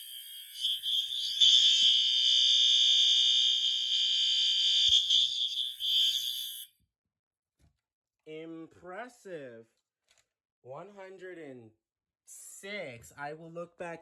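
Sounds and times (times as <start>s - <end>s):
high-pitched electronic alarm horn: 0.0s - 6.7s.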